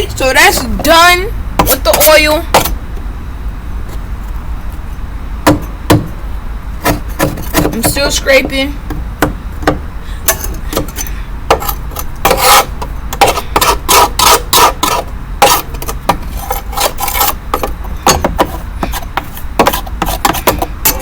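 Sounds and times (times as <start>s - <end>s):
scraper scraping mower deck: 10.9s - 21.0s.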